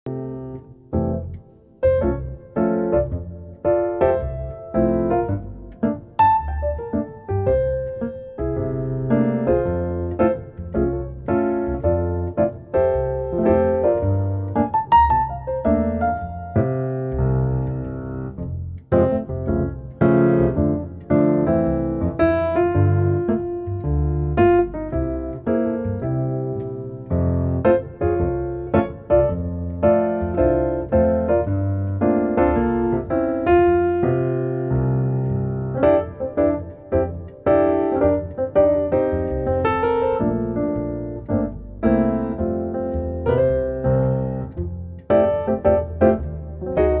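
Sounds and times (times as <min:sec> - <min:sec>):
solo piano melody: 0:00.0 - 0:47.0.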